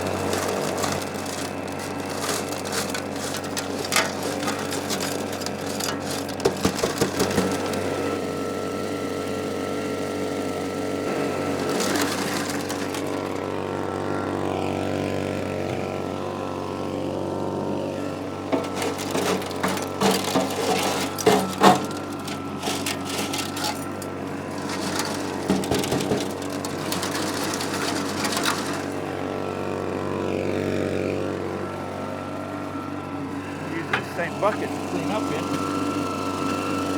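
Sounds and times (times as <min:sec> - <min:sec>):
stones clattering through hose: 0:00.0 - 0:07.9, 0:11.4 - 0:13.4, 0:18.4 - 0:29.1, 0:33.8 - 0:35.8
small gasoline engine running: 0:00.0 - 0:36.9.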